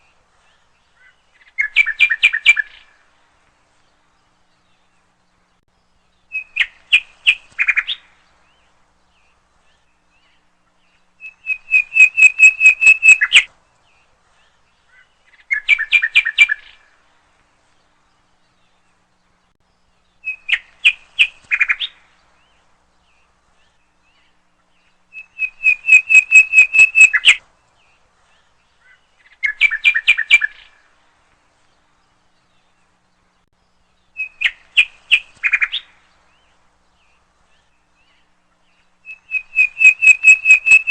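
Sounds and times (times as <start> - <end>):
nightingale singing: 0.0 - 3.1, 4.0 - 17.0, 18.1 - 30.9, 31.7 - 40.9.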